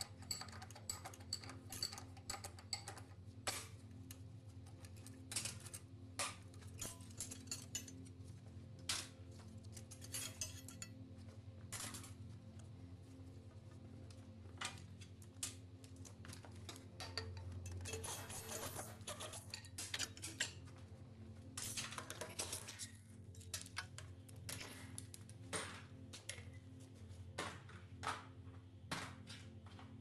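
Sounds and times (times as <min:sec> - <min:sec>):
metal tools clinking and clattering: 0:00.0 - 0:03.0, 0:06.6 - 0:08.1, 0:09.7 - 0:10.9, 0:16.6 - 0:20.6.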